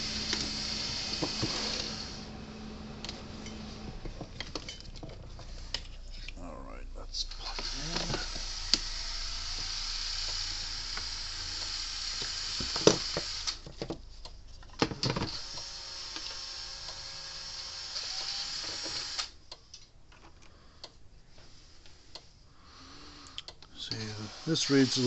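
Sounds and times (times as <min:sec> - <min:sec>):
steady high hiss: 0:00.0 - 0:02.9, 0:21.4 - 0:25.0
low hum: 0:00.0 - 0:11.7.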